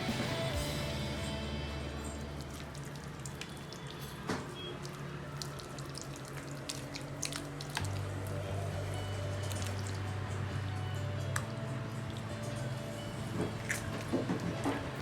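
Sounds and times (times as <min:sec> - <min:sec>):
faint background music: 0:00.0 - 0:15.0
hands squishing paste into fish: 0:02.2 - 0:08.4, 0:13.4 - 0:15.0.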